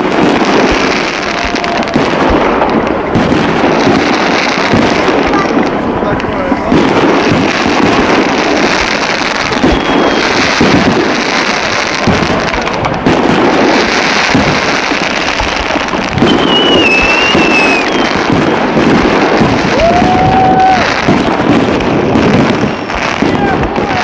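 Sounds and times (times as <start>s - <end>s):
fireworks bangs: 0.0s - 24.0s
fireworks crackling: 0.0s - 24.0s
wavering firework whistle: 9.1s - 11.9s, 14.2s - 21.4s.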